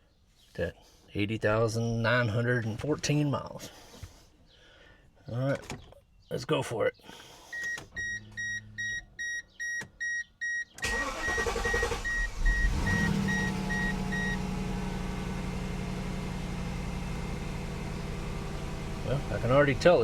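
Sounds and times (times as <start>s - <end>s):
dashboard warning chime beeping: 7.5s - 14.5s
car engine starting and idling: 10.8s - 20.0s.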